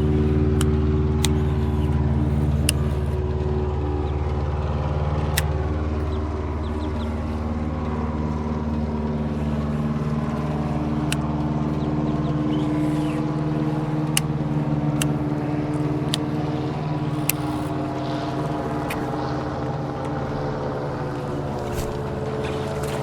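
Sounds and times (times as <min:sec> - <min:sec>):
outboard motor droning: 0:00.0 - 0:23.0
sharp ticks: 0:10.4 - 0:20.3.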